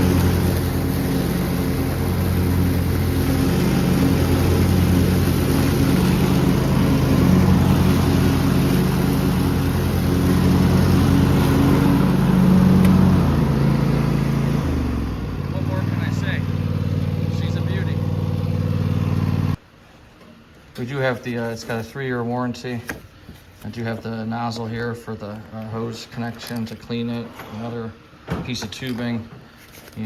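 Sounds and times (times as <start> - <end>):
lawn mower engine running: 0.0 - 19.6.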